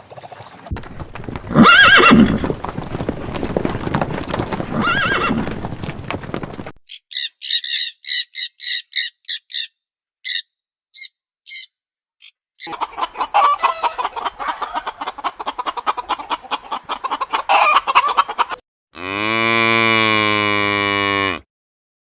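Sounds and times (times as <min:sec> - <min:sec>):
horse whinnying: 0:01.4 - 0:05.8
bird chirping: 0:06.9 - 0:18.2.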